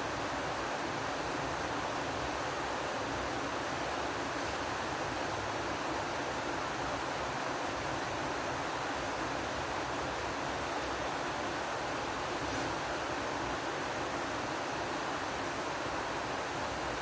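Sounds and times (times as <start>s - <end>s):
steady rushing hiss: 1.2s - 6.6s, 11.1s - 15.1s.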